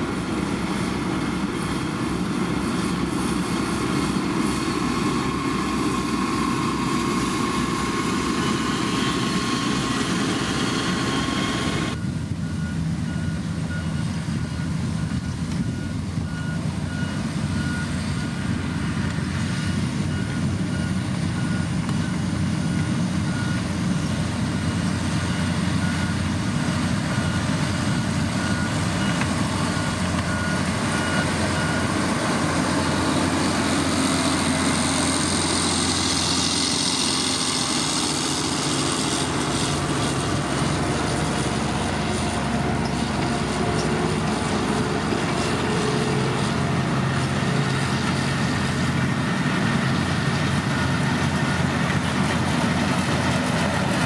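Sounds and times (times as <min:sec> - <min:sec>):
heavy diesel machinery running: 0:00.0 - 0:54.0
reversing alarm beeping: 0:03.8 - 0:19.0, 0:20.0 - 0:46.3, 0:50.6 - 0:51.8.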